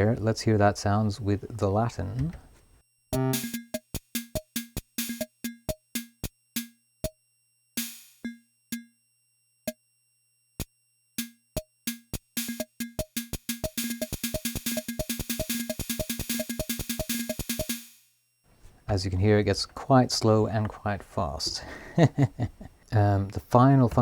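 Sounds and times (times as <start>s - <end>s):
electronic drum rhythm: 3.2s - 7.2s, 7.8s - 8.9s, 11.2s - 18.0s.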